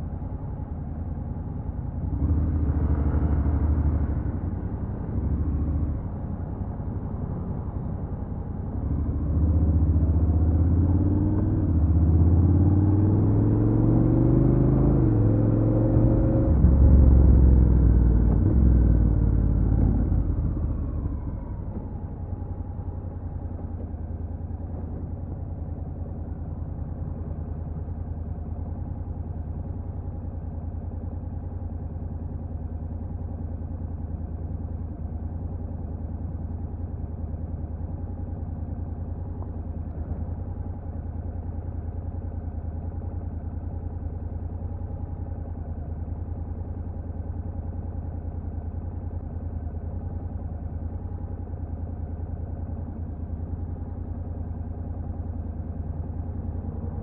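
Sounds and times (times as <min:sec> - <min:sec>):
motorcycle engine running steadily: 0:00.0 - 0:13.6, 0:15.0 - 0:57.0.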